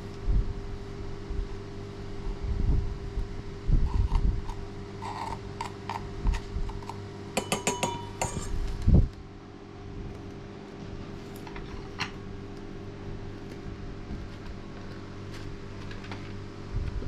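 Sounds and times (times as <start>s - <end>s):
steady low hum: 0.0s - 17.0s
metallic clinks and taps: 7.4s - 8.5s.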